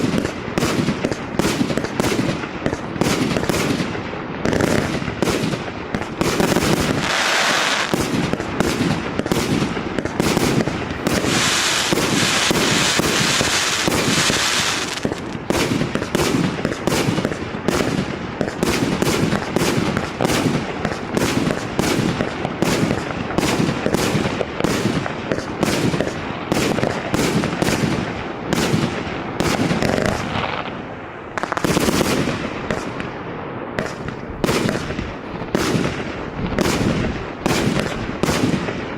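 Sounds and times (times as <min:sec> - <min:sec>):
fireworks battery firing: 0:00.0 - 0:33.1
dense hiss: 0:06.9 - 0:07.9.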